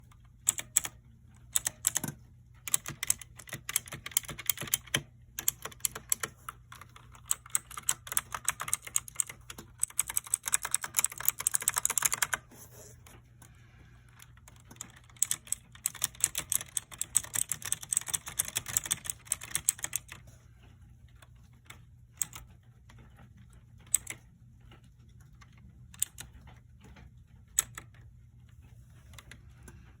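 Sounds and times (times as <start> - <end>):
mechanical keyboard key clacks: 0.4 - 0.9, 1.5 - 12.4, 14.5 - 20.2, 23.9 - 24.2, 25.9 - 26.2.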